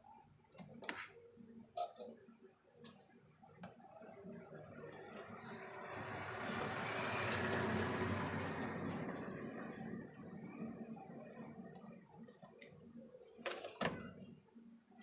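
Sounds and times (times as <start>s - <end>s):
vehicle passing by: 5.4s - 10.5s.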